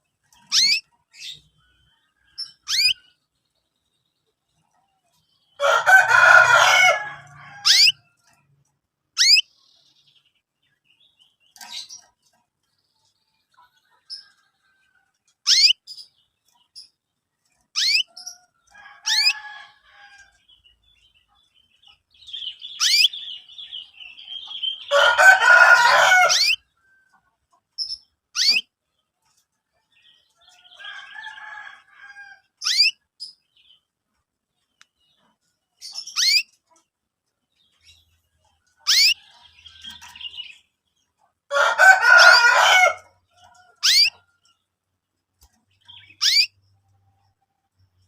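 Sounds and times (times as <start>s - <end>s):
young canaries chirping: 0.1s - 17.0s, 17.6s - 33.9s, 34.6s - 48.0s
scratchy bird chattering: 0.4s - 1.5s, 2.4s - 3.0s, 9.2s - 9.4s, 15.4s - 16.0s, 17.7s - 18.3s, 22.8s - 23.2s, 27.8s - 28.7s, 32.6s - 33.0s, 35.8s - 36.8s, 38.8s - 40.4s, 43.8s - 44.2s, 45.9s - 46.6s.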